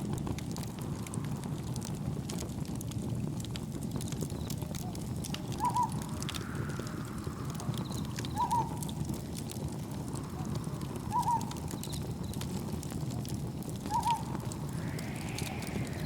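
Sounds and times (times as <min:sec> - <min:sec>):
wind rushing: 0:00.0 - 0:02.7, 0:05.4 - 0:11.8, 0:13.6 - 0:16.0
campfire crackling and popping: 0:00.0 - 0:16.0
insect chirps: 0:05.6 - 0:08.8, 0:13.9 - 0:16.0.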